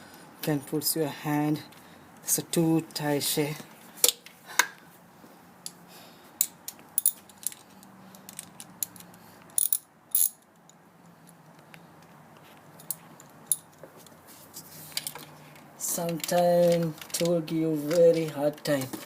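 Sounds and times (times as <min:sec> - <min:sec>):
metallic clicks of hand tools: 0:06.4 - 0:11.4.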